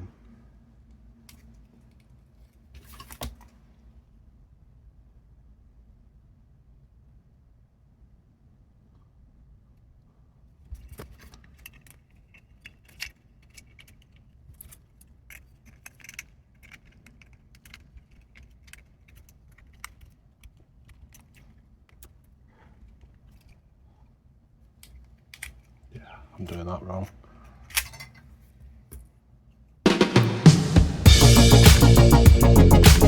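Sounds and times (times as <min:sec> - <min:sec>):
small plastic and metal clicks: 0:10.8 - 0:23.6, 0:24.8 - 0:25.7.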